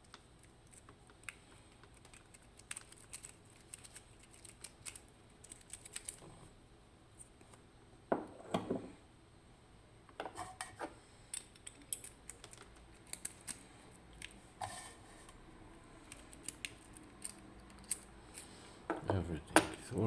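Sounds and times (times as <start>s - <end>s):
short scrape: 14.6s - 15.2s
metallic clicks and knocks of padlock: 16.3s - 18.4s.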